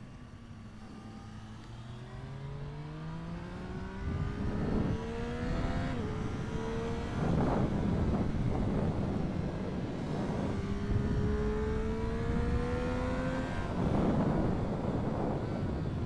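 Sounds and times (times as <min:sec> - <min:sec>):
motorcycle engine at full throttle: 0:00.3 - 0:16.0
wind rushing over microphone: 0:03.2 - 0:16.0.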